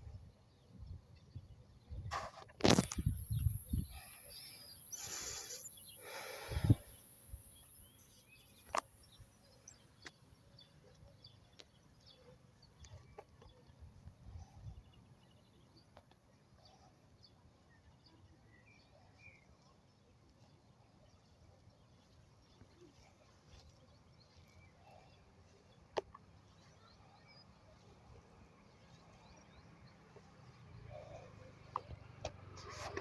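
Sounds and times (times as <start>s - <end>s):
faint bird chirps: 2.7s - 32.0s
faint clicks: 31.6s - 33.0s.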